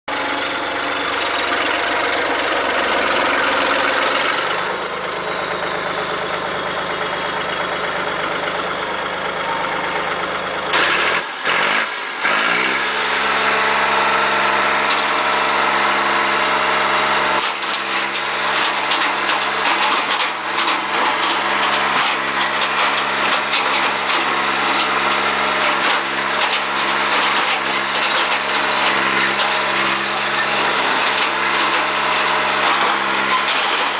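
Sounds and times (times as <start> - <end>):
tractor diesel engine running: 0.1 - 33.9
sharp cracks and crunches: 17.4 - 33.9.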